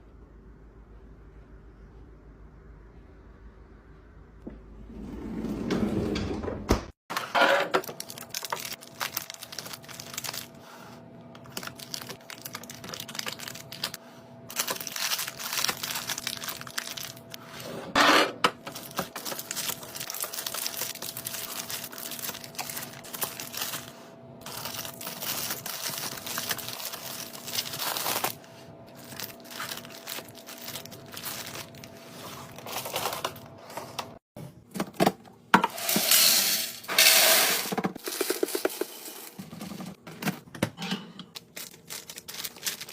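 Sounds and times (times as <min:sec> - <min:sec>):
plastic packaging crinkling: 0:07.7 - 0:10.6, 0:11.4 - 0:17.4, 0:18.6 - 0:33.6, 0:41.4 - 0:42.9.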